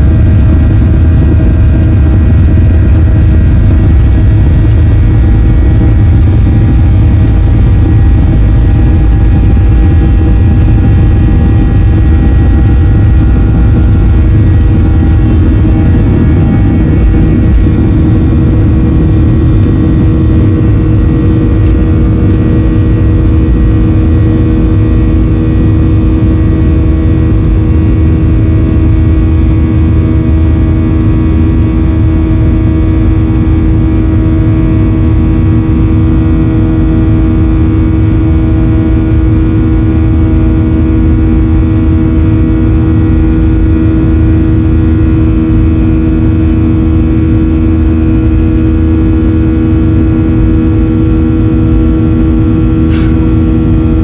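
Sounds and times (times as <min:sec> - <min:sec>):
faint pulsing tone: 0:00.0 - 0:32.7
jet engine buzzsaw drone in cabin: 0:00.0 - 0:54.0.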